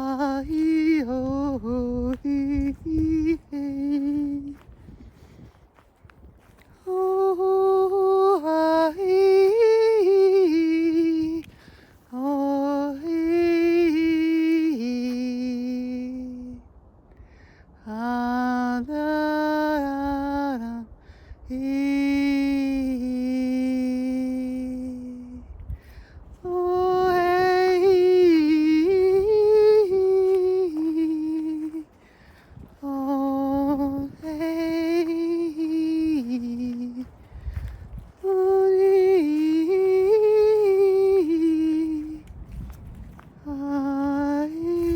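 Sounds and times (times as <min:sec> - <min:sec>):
woman breathing: 0:11.5 - 0:12.1, 0:17.2 - 0:17.8, 0:25.7 - 0:26.3, 0:31.9 - 0:32.8.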